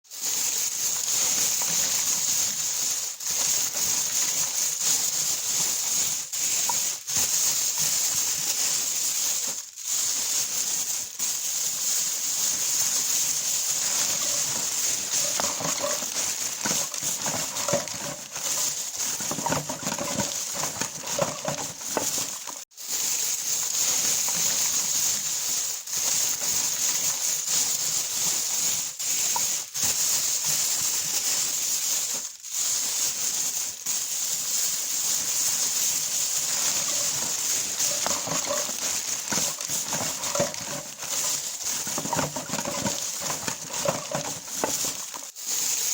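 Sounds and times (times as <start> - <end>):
plastic bag crinkling: 0.0 - 45.9.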